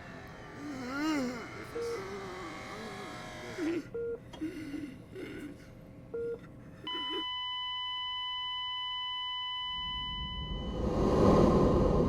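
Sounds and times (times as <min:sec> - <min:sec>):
heart monitor beep: 0:06.2 - 0:10.8
flatline alarm tone: 0:06.9 - 0:10.8.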